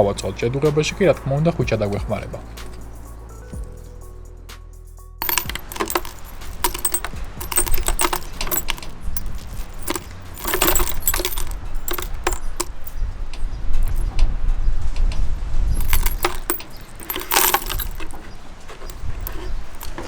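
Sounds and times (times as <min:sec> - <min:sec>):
metal parts clinking: 0:05.2 - 0:13.0, 0:13.8 - 0:14.2, 0:15.7 - 0:20.0.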